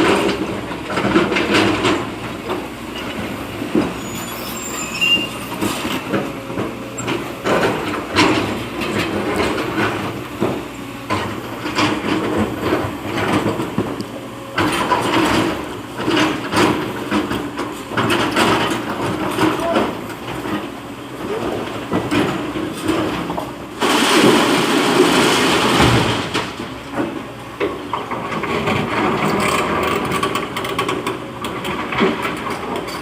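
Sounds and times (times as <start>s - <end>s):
excavator engine running: 0.0s - 33.0s
bucket clanking and scraping: 21.3s - 27.2s.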